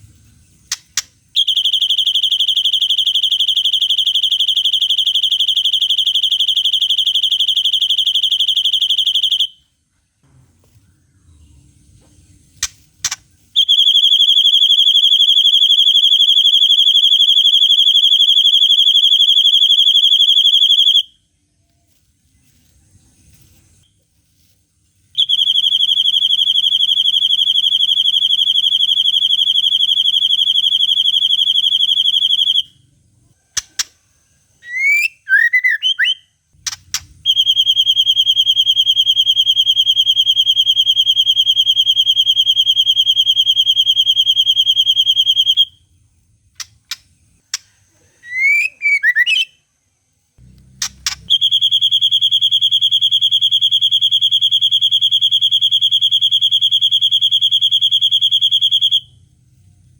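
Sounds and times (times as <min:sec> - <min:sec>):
bird chirps: 0:00.0 - 0:09.6, 0:10.2 - 0:24.5, 0:42.1 - 0:49.6, 0:50.4 - 0:57.1
sharp clicks: 0:00.6 - 0:01.5, 0:12.6 - 0:13.3, 0:33.6 - 0:34.0, 0:36.6 - 0:37.2, 0:46.6 - 0:47.8, 0:50.6 - 0:51.5
bird rapid trill: 0:50.7 - 0:56.3.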